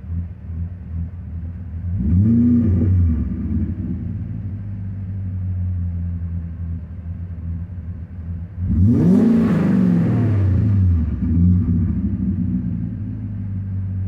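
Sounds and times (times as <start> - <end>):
car engine idling and revving: 0.0 - 14.0.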